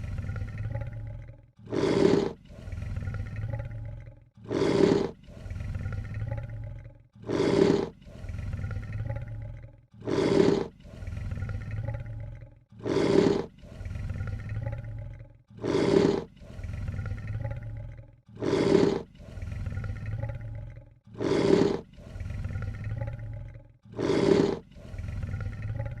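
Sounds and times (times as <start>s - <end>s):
lion hissing: 1.6s - 3.5s, 4.4s - 6.4s, 7.2s - 9.1s, 10.0s - 12.0s, 12.8s - 14.7s, 15.6s - 17.6s, 18.4s - 20.4s, 21.1s - 23.3s, 23.9s - 26.0s.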